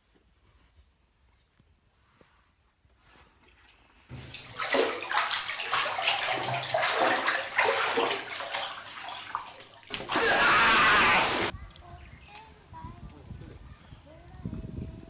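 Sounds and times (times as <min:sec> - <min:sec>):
water splashing and sloshing: 0:04.1 - 0:11.5.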